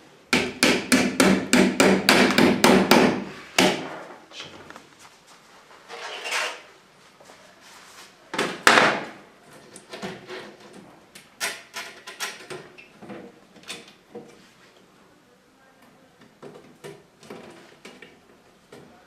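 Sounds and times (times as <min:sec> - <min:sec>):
cabinet parts knocking and scraping: 0:08.4 - 0:14.5.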